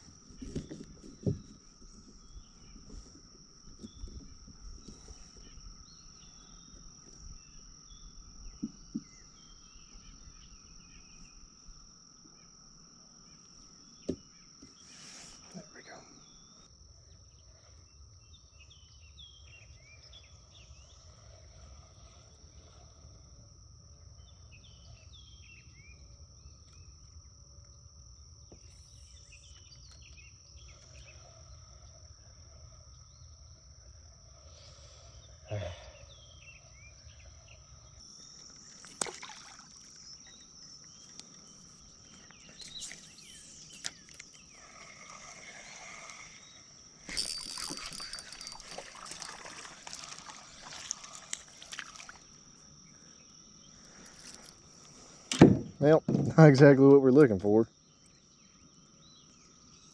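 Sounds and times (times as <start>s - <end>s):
insects droning: 0.0s - 59.9s
birds chirping: 40.2s - 52.2s.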